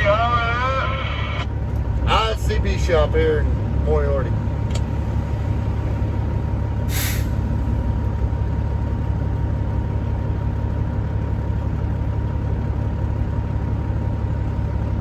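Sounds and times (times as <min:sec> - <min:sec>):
diesel truck engine idling: 0:00.0 - 0:15.0
air hiss: 0:06.9 - 0:07.3.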